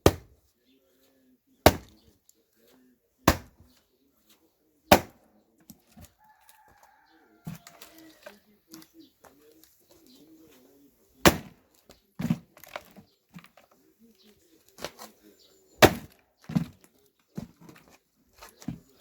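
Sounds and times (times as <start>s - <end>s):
axe striking firewood: 0.0s - 0.4s, 1.6s - 2.0s, 3.2s - 3.7s, 4.9s - 5.2s, 11.2s - 11.6s, 15.8s - 16.8s.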